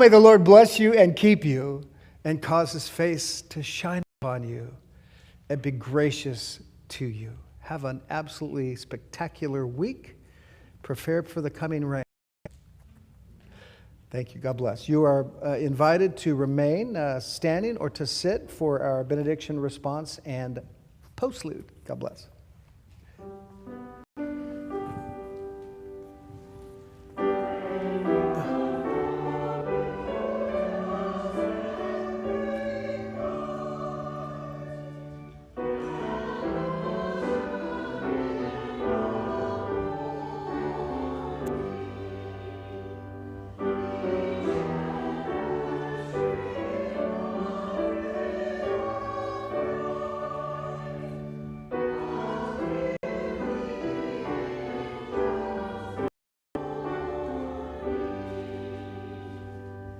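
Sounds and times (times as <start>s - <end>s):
church choir singing: 0.0s - 4.0s, 23.4s - 59.9s.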